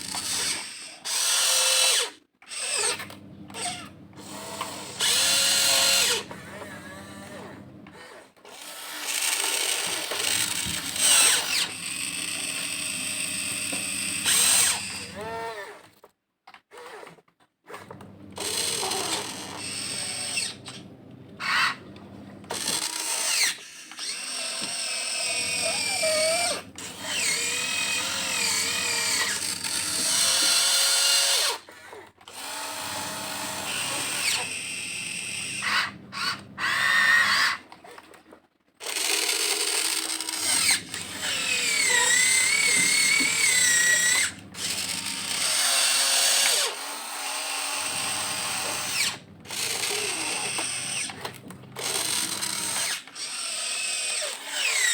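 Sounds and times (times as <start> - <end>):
electric motors whining: 0.0 - 15.8, 17.9 - 31.6, 32.3 - 37.6, 38.9 - 54.9.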